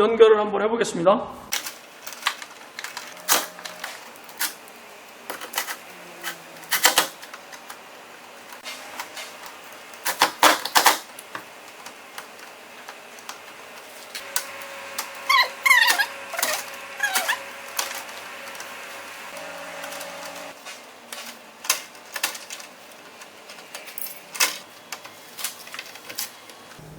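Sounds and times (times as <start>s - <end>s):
tools and metal parts clicking: 5.3s - 7.8s, 21.1s - 26.5s.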